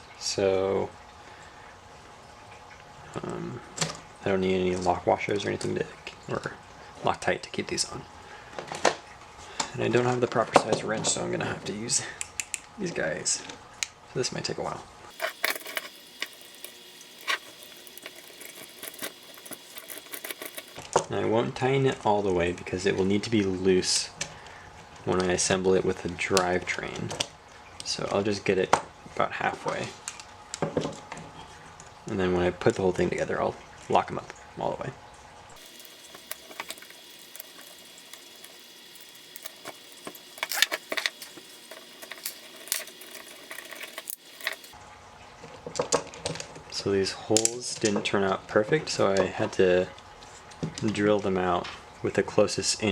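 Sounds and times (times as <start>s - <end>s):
metal tool clicks and scrapes: 15.1s - 20.8s, 35.8s - 44.8s
faint steady hiss: 35.6s - 44.8s.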